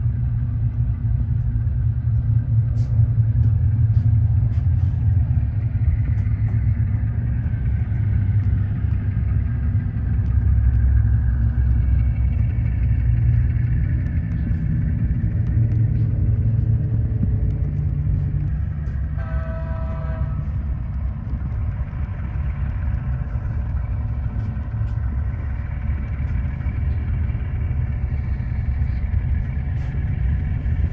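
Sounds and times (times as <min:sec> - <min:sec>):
low background rumble: 0:00.0 - 0:30.9
model train diesel engine sound: 0:00.0 - 0:30.9.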